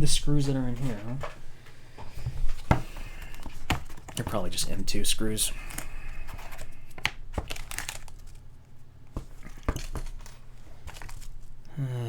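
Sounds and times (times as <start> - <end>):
plastic packaging crinkling: 5.5 - 8.6, 9.4 - 11.6.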